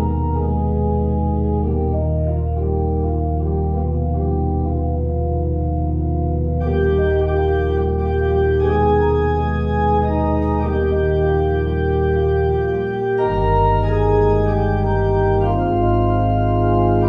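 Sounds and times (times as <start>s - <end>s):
organ playing slow chords: 0.0s - 17.0s.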